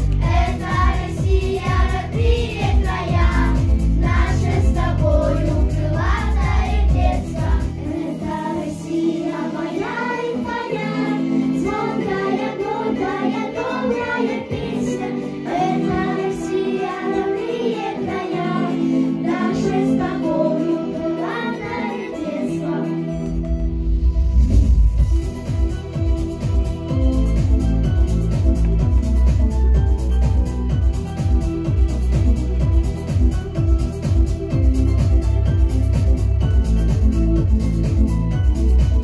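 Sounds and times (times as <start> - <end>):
heavy bass: 0.0 - 7.9, 23.4 - 39.0
instrumental accompaniment: 0.0 - 39.0
children singing together: 0.2 - 23.2.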